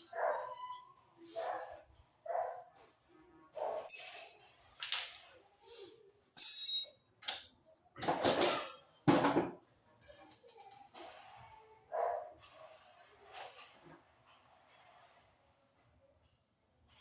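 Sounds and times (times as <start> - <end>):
metal tools knocking and clanking: 3.6 - 5.2, 6.4 - 10.8.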